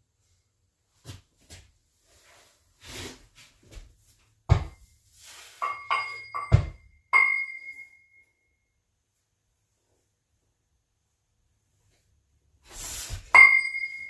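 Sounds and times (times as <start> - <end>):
metal weights clinking: 5.6 - 8.0.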